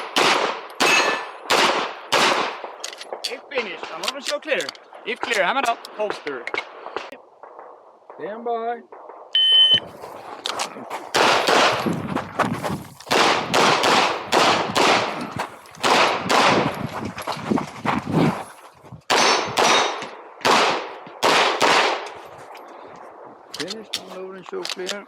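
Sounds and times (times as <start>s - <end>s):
pistol shots with echo: 0.0s - 2.8s, 11.1s - 11.8s, 13.1s - 15.2s, 15.8s - 16.7s, 19.1s - 22.1s.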